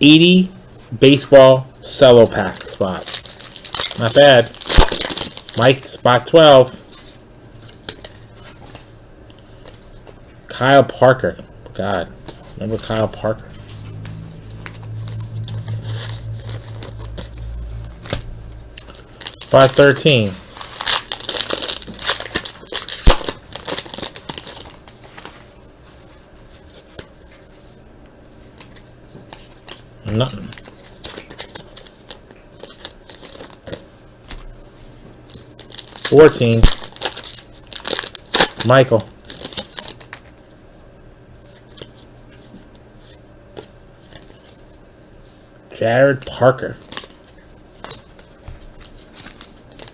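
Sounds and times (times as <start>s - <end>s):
faint low hum: 0.0s - 49.9s
wrapper tearing and crinkling: 2.4s - 5.8s, 14.0s - 25.5s, 30.1s - 33.8s, 35.3s - 40.3s, 46.8s - 49.9s.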